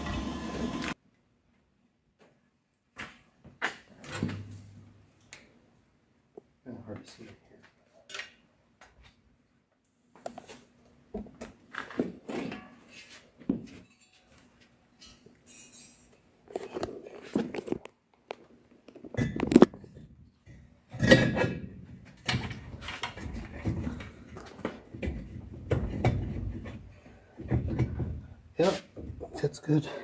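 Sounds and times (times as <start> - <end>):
tools and parts clinking: 13.7 - 17.8.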